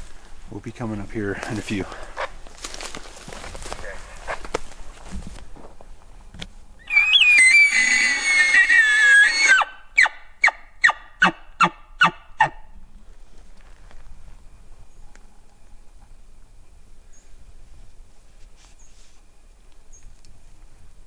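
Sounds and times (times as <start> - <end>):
elk bugling whistle: 6.8 - 12.6.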